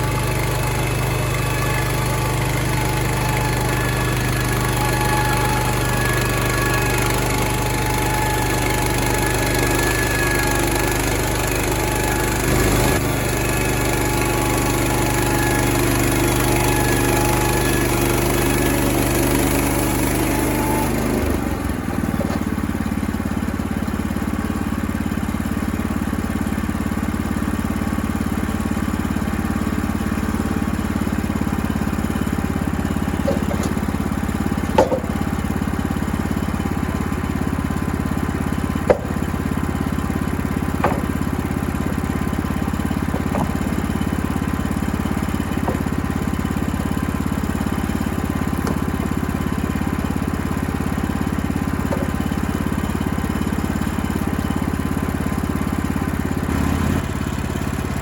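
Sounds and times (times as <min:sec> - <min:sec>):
engine running: 0:00.0 - 0:58.0
sharp knocks: 0:22.0 - 0:22.6, 0:33.2 - 0:33.9, 0:34.6 - 0:35.3, 0:38.8 - 0:39.4, 0:40.7 - 0:41.5, 0:42.9 - 0:44.2, 0:51.9 - 0:52.4.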